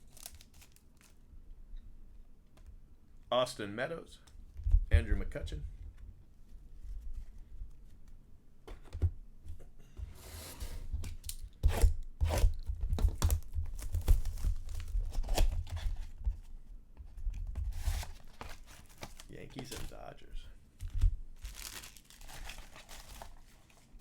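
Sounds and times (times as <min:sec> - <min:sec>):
cards being handled: 0:00.0 - 0:01.2, 0:17.4 - 0:20.0
wrapper tearing and crinkling: 0:00.0 - 0:01.2, 0:17.8 - 0:20.0, 0:21.4 - 0:24.0.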